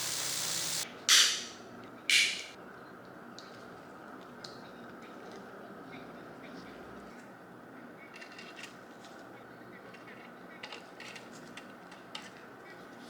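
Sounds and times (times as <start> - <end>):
steady low hiss: 0.0 - 2.6.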